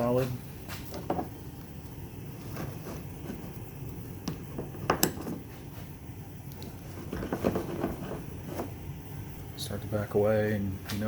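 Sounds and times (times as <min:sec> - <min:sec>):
steady low hum: 0:00.0 - 0:11.0.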